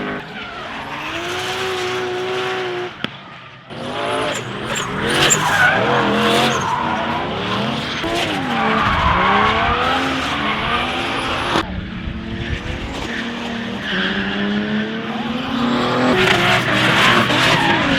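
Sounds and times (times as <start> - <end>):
race car engines revving: 0.0 - 17.9
tyres squealing: 4.2 - 11.6.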